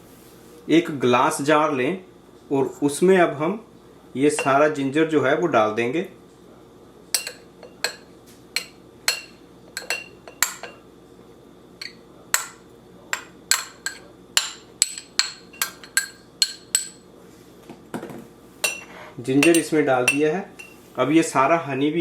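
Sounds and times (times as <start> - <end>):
utensil clinking against glass jar: 7.2 - 10.8, 11.8 - 17.0, 18.6 - 20.8.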